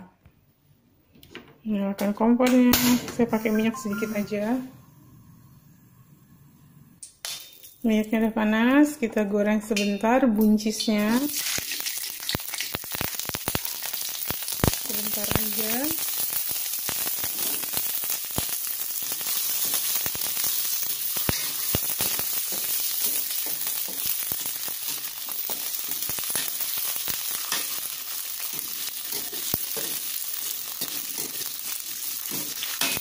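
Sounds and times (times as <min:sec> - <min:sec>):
beans sizzling in hot oil: 0:10.4 - 0:33.0.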